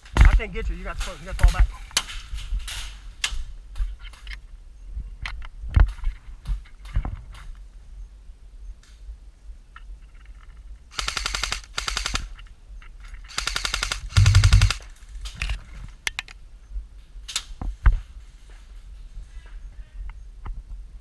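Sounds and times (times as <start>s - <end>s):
airsoft guns firing bursts: 10.9s - 12.3s, 13.3s - 14.9s
single gunshots: 13.4s - 14.8s.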